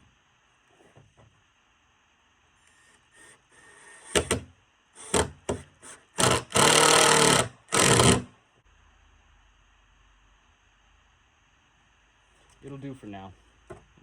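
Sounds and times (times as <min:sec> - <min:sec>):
power drill driving screws into wood: 0:03.6 - 0:04.4, 0:05.0 - 0:08.3.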